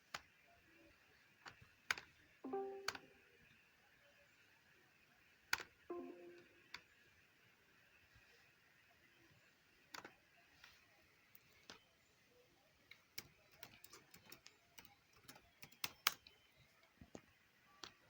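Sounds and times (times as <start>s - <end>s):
sharp clicks and taps: 1.5s - 3.1s.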